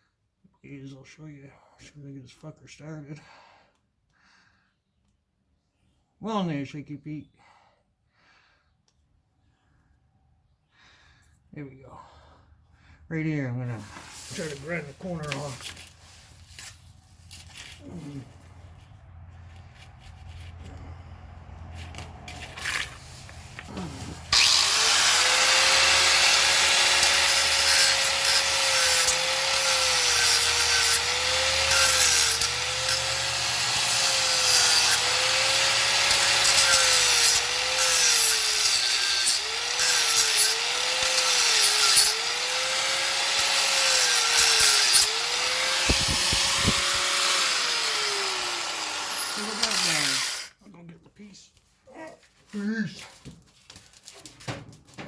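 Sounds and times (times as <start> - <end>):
angle grinder grinding metal: 13.9 - 18.5, 21.8 - 50.6.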